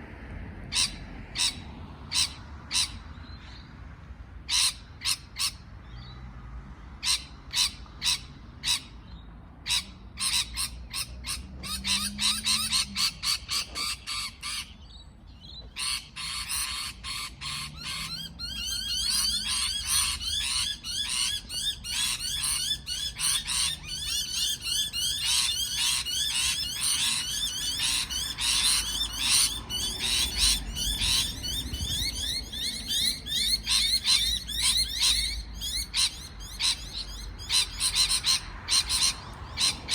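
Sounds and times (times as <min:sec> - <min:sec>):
parrots chirping: 0:09.7 - 0:14.8, 0:15.8 - 0:39.9.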